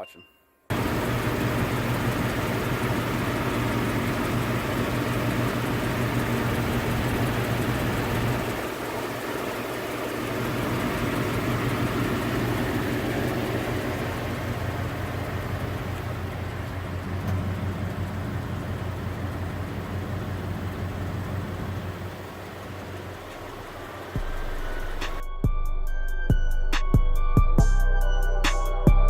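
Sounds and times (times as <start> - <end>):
engine idling with ticking: 0.7 - 27.0.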